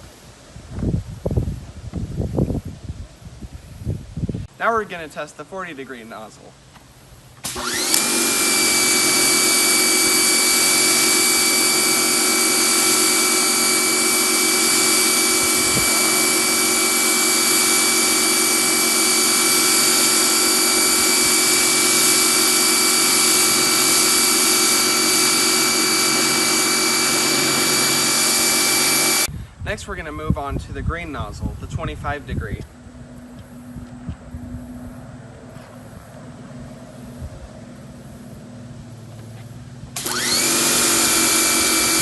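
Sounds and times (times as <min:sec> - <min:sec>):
pressure washer motor whine: 0:07.4 - 0:29.3, 0:32.8 - 0:42.0.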